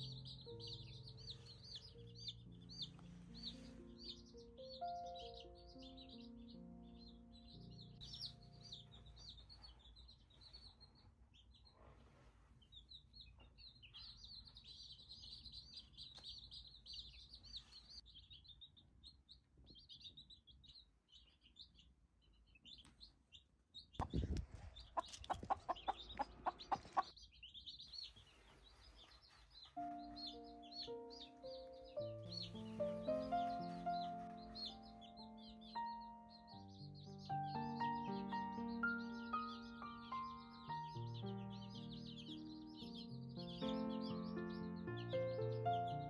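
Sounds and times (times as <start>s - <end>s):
background music: 0.0s - 9.6s, 29.8s - 46.0s
chicks peeping: 0.0s - 46.0s.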